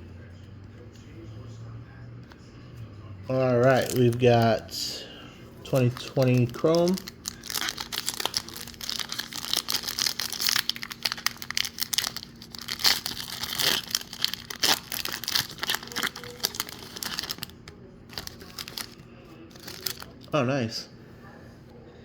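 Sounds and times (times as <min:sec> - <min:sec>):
foil wrapper tearing and crinkling: 0:03.3 - 0:04.6, 0:05.6 - 0:20.3.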